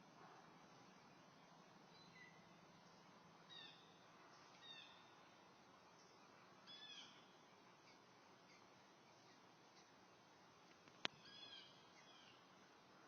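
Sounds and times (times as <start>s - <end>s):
faint bird chirps: 0.9s - 5.2s, 5.9s - 10.0s, 11.0s - 12.6s.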